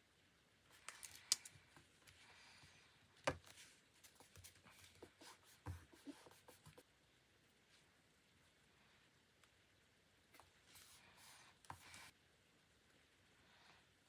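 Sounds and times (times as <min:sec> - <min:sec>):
paper rustling: 0:00.7 - 0:01.6.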